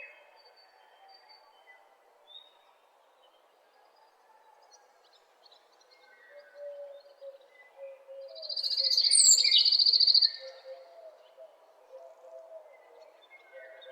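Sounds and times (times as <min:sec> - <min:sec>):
songbird trilling: 0:08.5 - 0:10.4.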